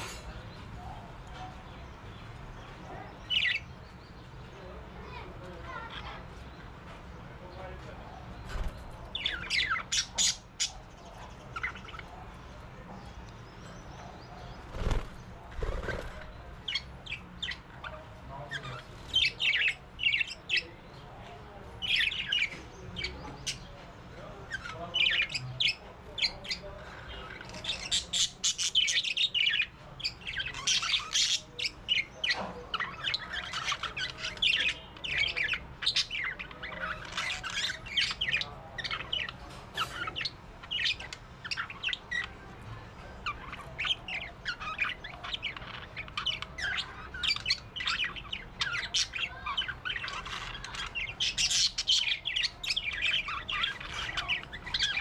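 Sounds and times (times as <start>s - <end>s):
parrots squawking: 43.2s - 55.0s.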